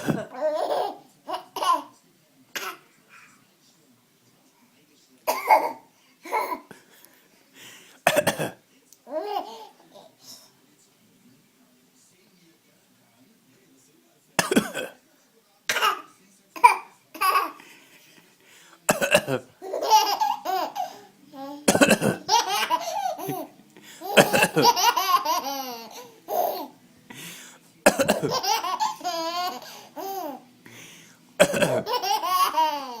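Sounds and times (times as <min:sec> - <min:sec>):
baby coughing: 0:00.0 - 0:02.0, 0:02.6 - 0:02.9, 0:05.2 - 0:06.7, 0:08.1 - 0:10.1, 0:14.4 - 0:15.0, 0:15.7 - 0:17.6, 0:18.9 - 0:26.7, 0:27.8 - 0:30.4, 0:31.4 - 0:33.0.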